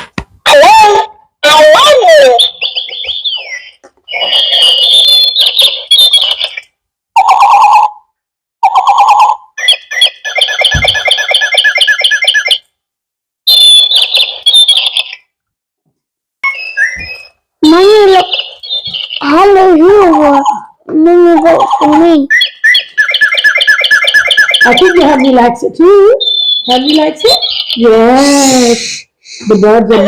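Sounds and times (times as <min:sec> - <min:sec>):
electronic toy birds chirping: 0:01.6 - 0:06.7, 0:08.7 - 0:12.7, 0:13.5 - 0:15.3, 0:16.4 - 0:20.6, 0:21.4 - 0:25.5, 0:26.2 - 0:29.4.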